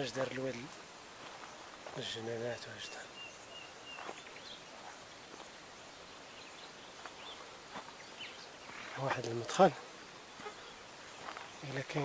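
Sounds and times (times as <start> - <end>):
outdoor background hiss: 0.0 - 12.0
faint bird chirps: 1.4 - 9.3.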